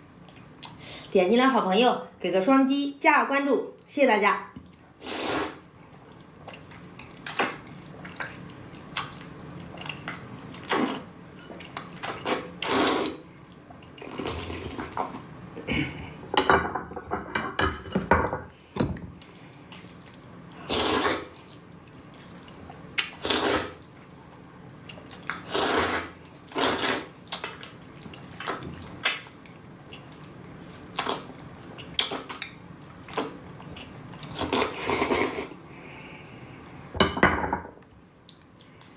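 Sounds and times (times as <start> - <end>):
noodles being slurped: 6.5 - 13.2, 19.7 - 21.6, 22.2 - 23.9, 25.0 - 29.2, 30.1 - 35.6.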